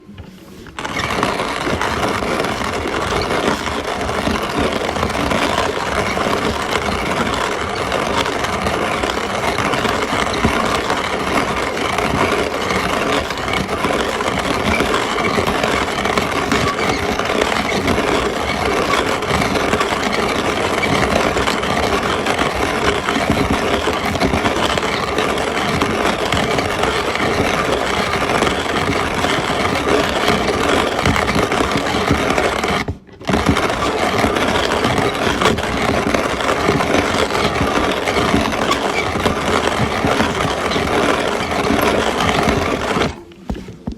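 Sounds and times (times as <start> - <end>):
tool grinding: 0.6 - 43.9.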